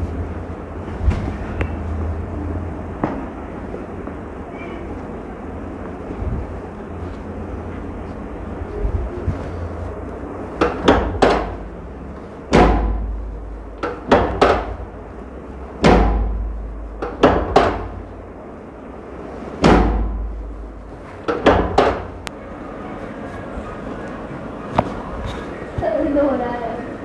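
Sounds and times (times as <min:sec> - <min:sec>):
sharp knocks: 0:10.6 - 0:11.6, 0:12.5 - 0:13.1, 0:13.8 - 0:14.9, 0:15.8 - 0:18.0, 0:19.6 - 0:20.4, 0:21.2 - 0:22.2
heavy thuds with low boom: 0:15.8 - 0:18.0.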